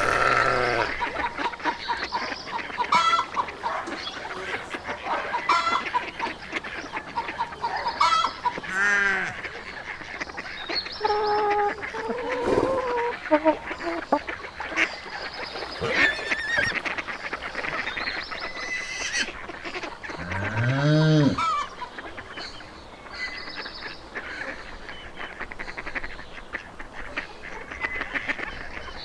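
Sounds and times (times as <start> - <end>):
low drawn-out animal call: 0.0 - 1.4, 11.0 - 14.2, 15.6 - 17.9, 20.1 - 21.7
geese and ducks honking and quacking: 0.0 - 29.0.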